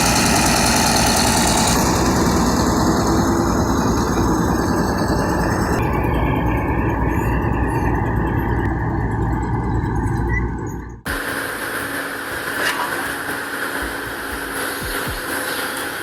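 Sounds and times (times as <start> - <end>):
hiss: 0.0 - 5.6, 11.1 - 16.0
heavy machine engine running: 0.0 - 16.0
steady whine: 0.0 - 16.0.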